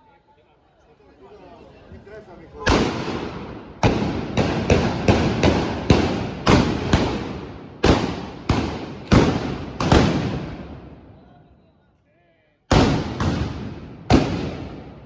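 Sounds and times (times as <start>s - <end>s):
blunderbuss gunshots echoing: 2.6s - 10.9s, 12.7s - 15.0s.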